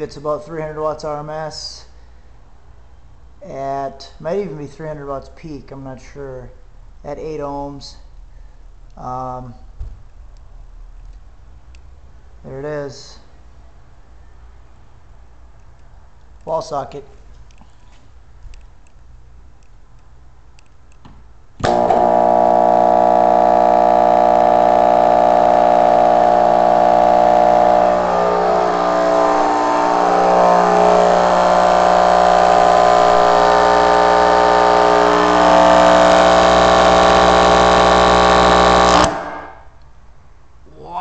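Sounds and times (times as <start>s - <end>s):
subwoofer buzzing hum: 21.2s - 39.8s.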